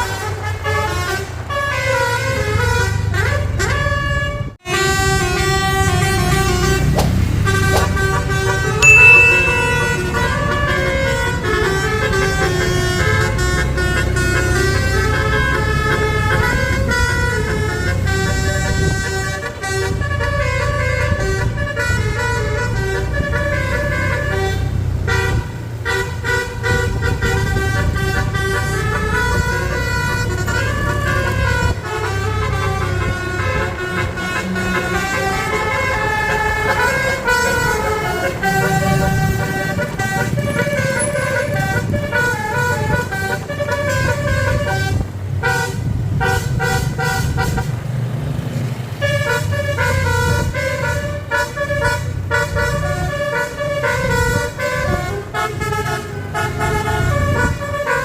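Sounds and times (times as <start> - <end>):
low bus engine rumble: 0.0 - 8.8, 10.0 - 58.0
musical air horn melody: 8.8 - 30.8, 49.1 - 58.0.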